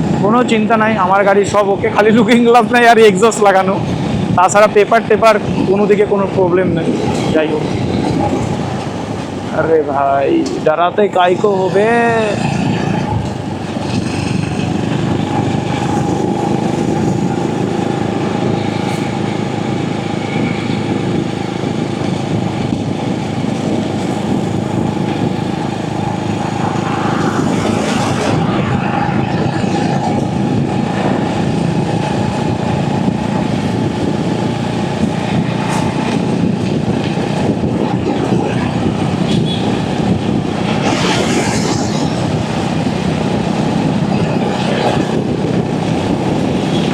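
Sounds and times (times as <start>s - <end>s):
road noise: 0.0s - 46.9s
wind noise: 0.0s - 46.9s
motorcycle engine running: 11.8s - 27.6s.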